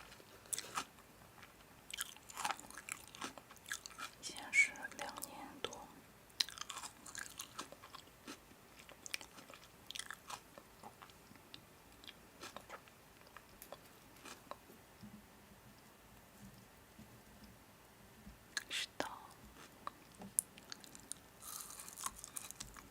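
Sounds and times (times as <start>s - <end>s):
person chewing crunchy food: 0.2s - 4.2s, 6.4s - 14.6s, 18.6s - 22.9s.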